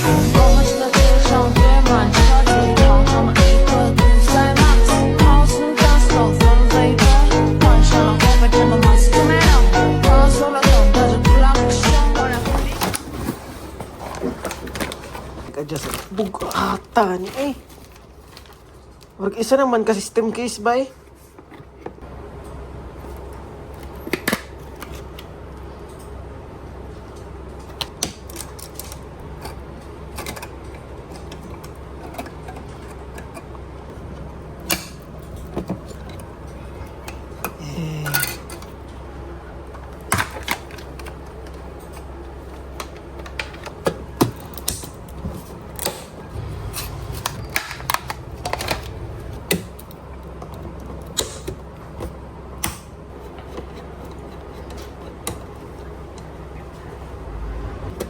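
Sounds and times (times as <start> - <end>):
low steady hum: 0.0 - 58.0.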